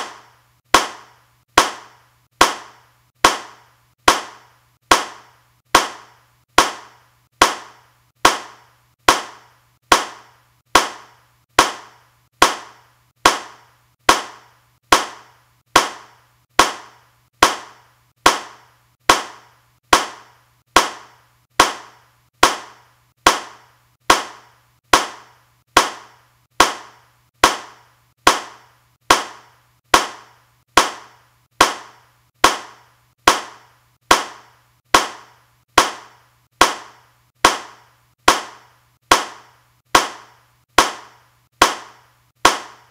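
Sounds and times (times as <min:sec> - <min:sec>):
hand clap: 0:00.0 - 0:42.9.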